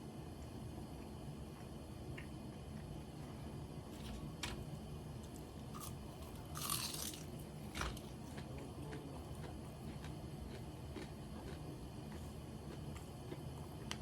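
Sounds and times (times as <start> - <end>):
crunch of biting fried chicken: 5.8 - 7.3.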